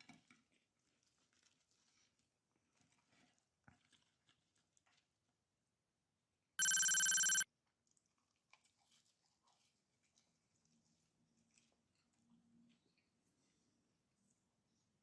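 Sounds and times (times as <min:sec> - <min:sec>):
electronic ringing tone: 0:06.6 - 0:07.4.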